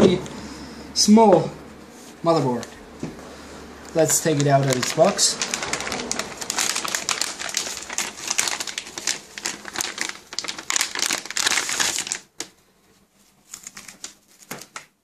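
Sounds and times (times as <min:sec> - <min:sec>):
plastic bag crinkling: 0:03.9 - 0:12.6, 0:13.4 - 0:15.0.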